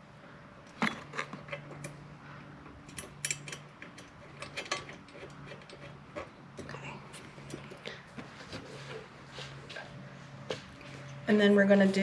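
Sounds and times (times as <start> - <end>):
metal hardware clicking and tapping: 2.8 - 6.8.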